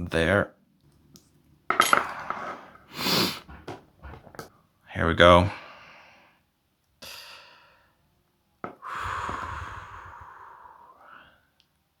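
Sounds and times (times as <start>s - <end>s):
person sighing: 8.7s - 11.2s
person breathing in: 8.8s - 11.5s.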